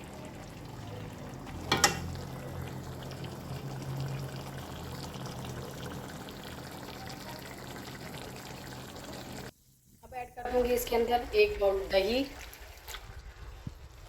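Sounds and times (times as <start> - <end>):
food sizzling and bubbling in oil: 0.0 - 14.0
spoon knocking pan: 1.6 - 2.2.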